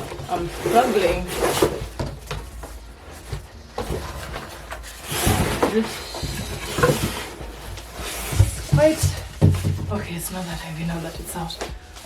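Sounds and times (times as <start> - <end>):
cardboard box scraping and rustling: 0.0 - 12.0.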